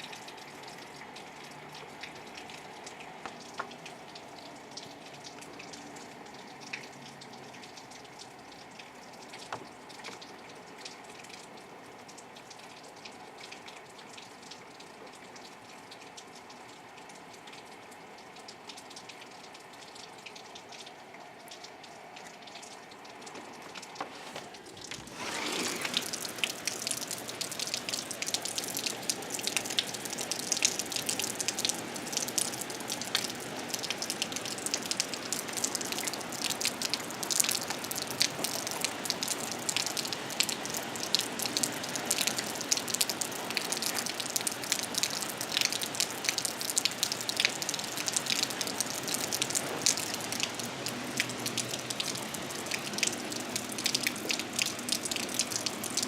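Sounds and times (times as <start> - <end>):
rain falling: 0.0 - 56.0
raindrops ticking and dripping: 0.0 - 56.0.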